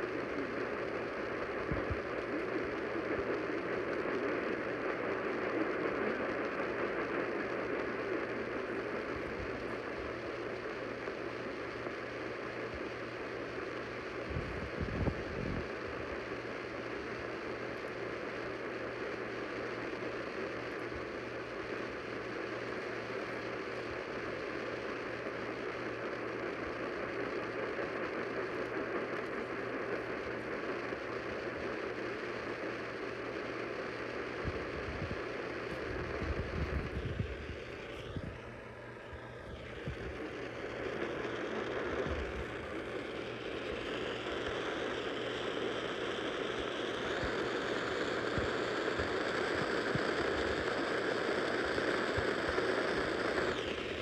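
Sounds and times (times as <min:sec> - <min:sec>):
radio static hiss: 0:00.0 - 0:54.0
low hum: 0:34.4 - 0:47.9.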